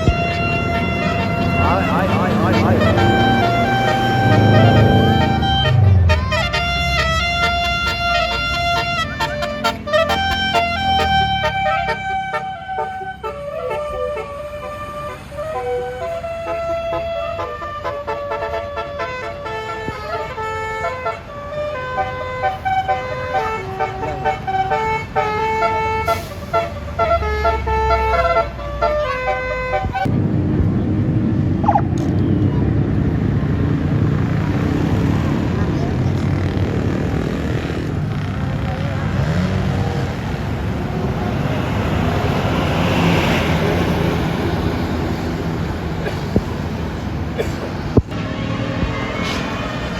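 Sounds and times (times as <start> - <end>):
vehicle passing close: 0.0 - 13.6, 30.2 - 49.9
vehicle engine running: 0.0 - 14.4
bus horn playing a tune: 0.0 - 30.1, 39.1 - 49.9
bus engine rumbling: 0.0 - 49.9.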